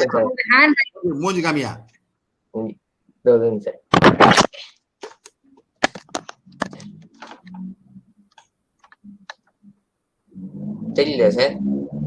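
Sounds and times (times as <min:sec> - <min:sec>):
faint low rumbling: 0:09.0 - 0:12.0.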